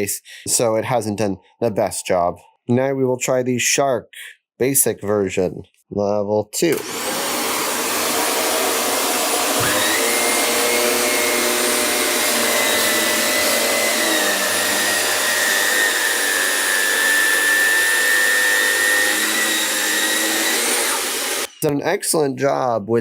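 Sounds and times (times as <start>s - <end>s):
upright vacuum running on carpet: 6.8s - 17.5s.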